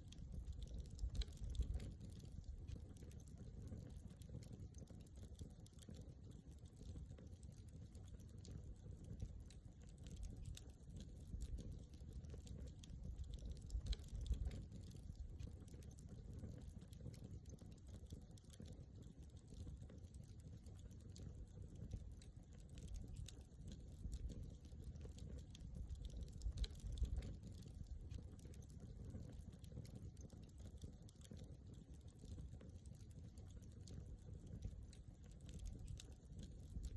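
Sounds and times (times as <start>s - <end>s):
campfire crackling and popping: 0.0s - 36.9s.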